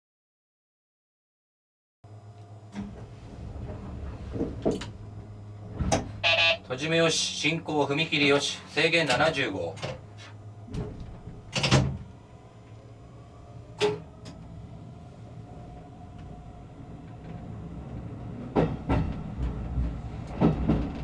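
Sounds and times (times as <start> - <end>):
train rumble: 2.7 - 21.0.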